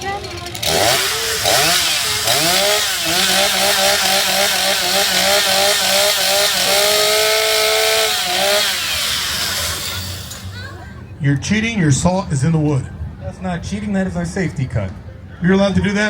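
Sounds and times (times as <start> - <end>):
chainsaw revving: 0.4 - 10.7.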